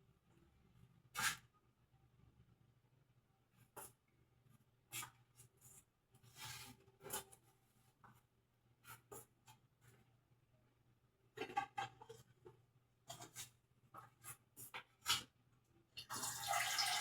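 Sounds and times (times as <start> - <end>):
scrape: 1.1 - 1.5, 3.6 - 4.0, 4.9 - 8.2, 8.8 - 10.0, 13.1 - 15.3.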